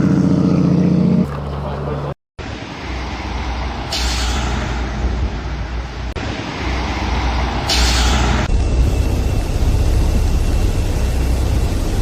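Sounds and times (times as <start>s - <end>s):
heavy vehicle rumbling: 0.0s - 12.0s
air hiss burst: 3.9s - 4.8s, 7.6s - 8.5s.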